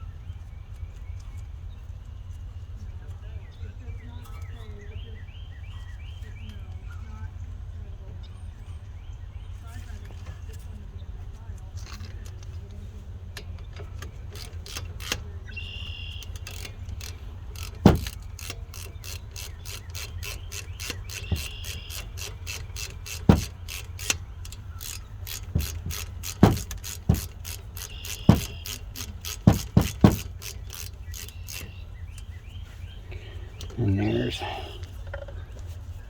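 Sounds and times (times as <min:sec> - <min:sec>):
ratchet wrench clicking: 0:13.4 - 0:32.3
louder knocks: 0:17.8 - 0:18.2, 0:25.4 - 0:27.4, 0:29.4 - 0:30.4.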